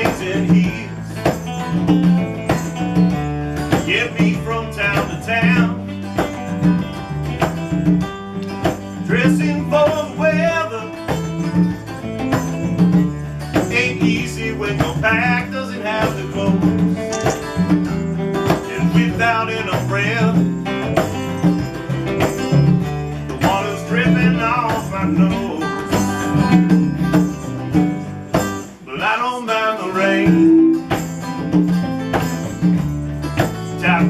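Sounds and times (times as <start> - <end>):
strummed acoustic guitar: 0.0 - 34.0
lead melody line: 16.8 - 18.4.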